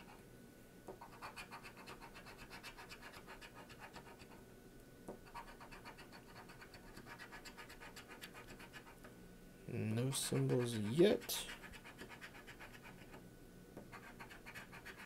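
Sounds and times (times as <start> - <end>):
scratching lottery ticket: 10.1 - 13.2, 13.9 - 15.0.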